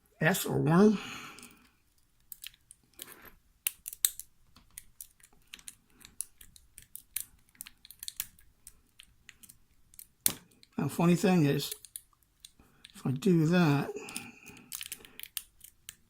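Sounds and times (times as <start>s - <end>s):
lock pick clicking in padlock: 3.6s - 10.4s.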